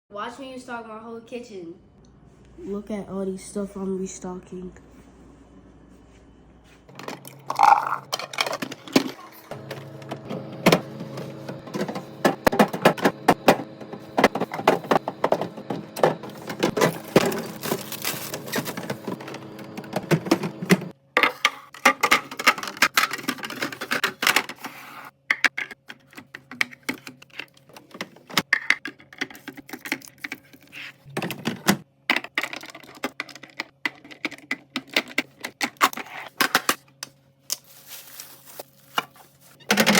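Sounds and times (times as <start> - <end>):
containers clicking and tapping: 6.9 - 9.8.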